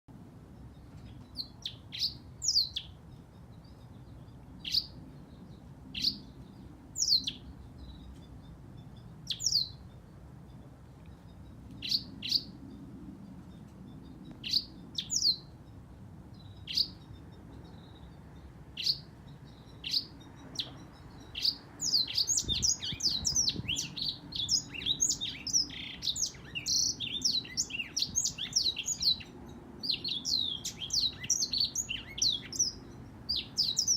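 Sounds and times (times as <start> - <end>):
canary calling and twittering: 18.8 - 33.9.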